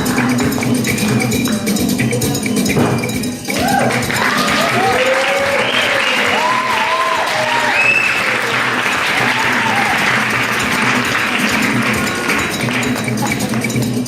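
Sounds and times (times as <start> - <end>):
voices whooping: 3.5 - 10.3
audience applauding and cheering: 3.5 - 13.7.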